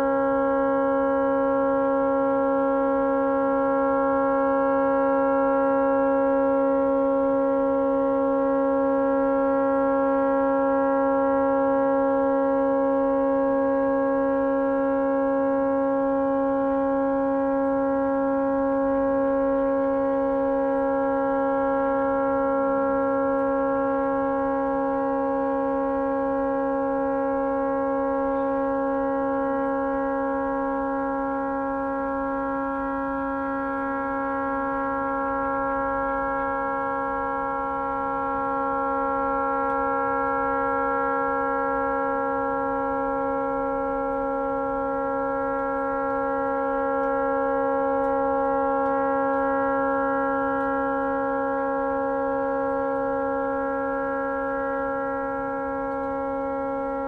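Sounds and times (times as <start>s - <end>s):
tugboat horn steady blast: 0.0s - 57.0s.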